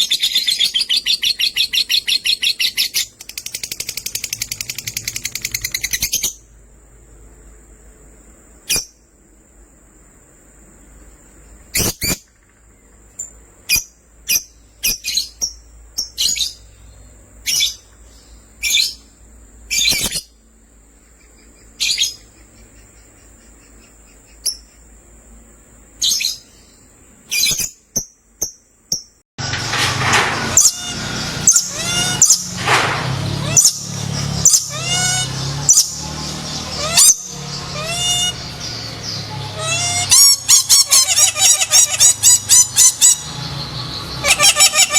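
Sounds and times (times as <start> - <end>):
birds chirping: 0.0 - 9.0, 10.2 - 44.9.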